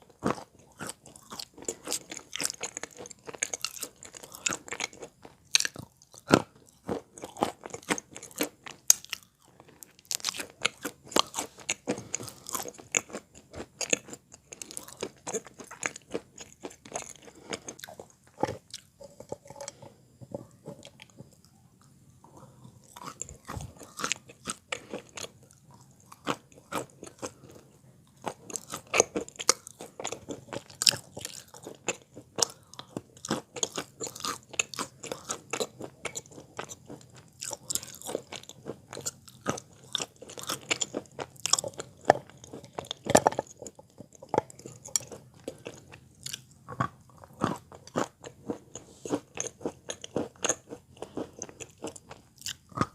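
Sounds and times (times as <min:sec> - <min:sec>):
chewing wet chalk crunches: 0:00.1 - 0:21.6, 0:22.3 - 0:52.9.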